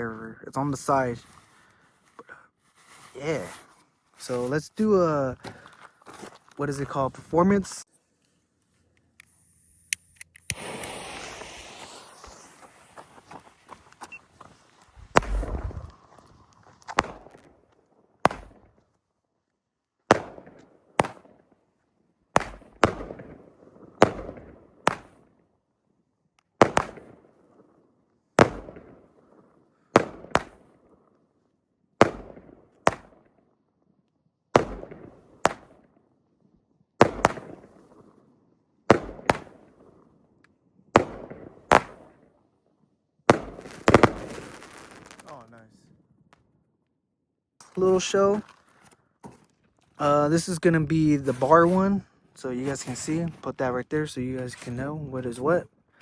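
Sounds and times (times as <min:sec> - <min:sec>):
firework bangs: 0:10.5 - 0:18.7, 0:22.4 - 0:23.4, 0:26.6 - 0:27.3, 0:28.4 - 0:29.0, 0:37.0 - 0:37.8, 0:38.9 - 0:39.7, 0:41.0 - 0:42.2, 0:43.3 - 0:45.5.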